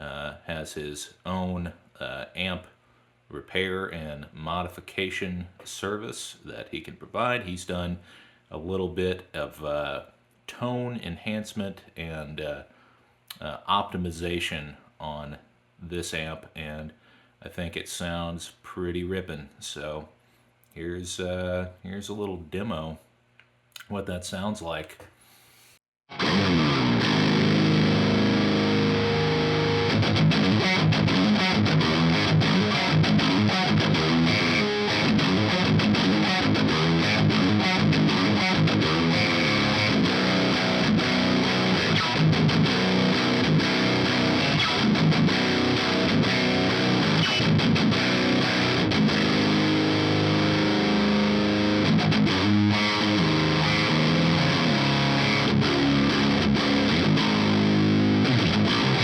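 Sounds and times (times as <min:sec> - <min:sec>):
distorted electric guitar riffing: 0:26.1 - 0:59.0.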